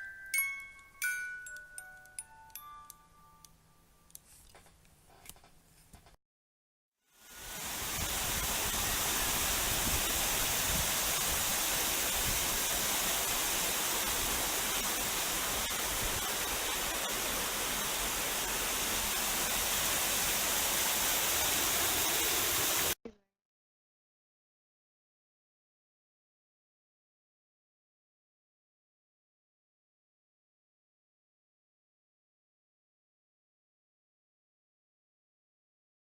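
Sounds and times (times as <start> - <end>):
waterfall rushing: 7.3 - 23.0.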